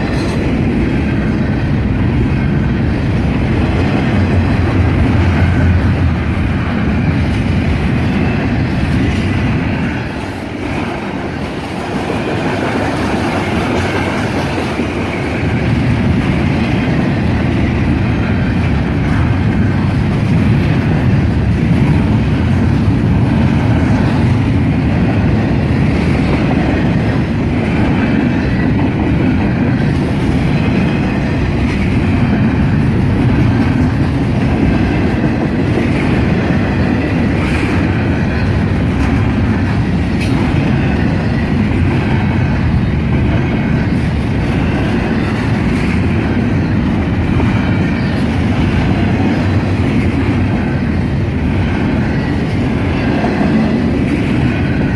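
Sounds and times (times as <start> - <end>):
freight train rolling past: 0.0 - 54.9
wheels clacking over rail joints: 0.0 - 54.9.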